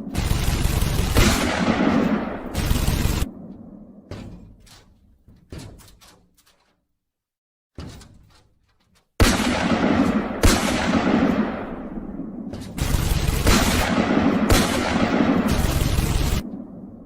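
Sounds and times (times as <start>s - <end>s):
loud blasts: 0.0s - 3.4s, 12.8s - 16.4s
sharp echoing bangs: 0.0s - 4.5s, 9.2s - 17.0s.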